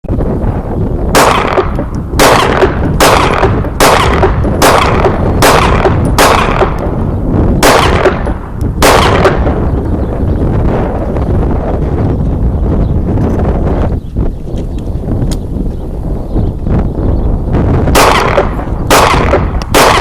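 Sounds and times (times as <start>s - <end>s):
gunshots with echo: 1.1s - 9.9s, 17.8s - 20.0s.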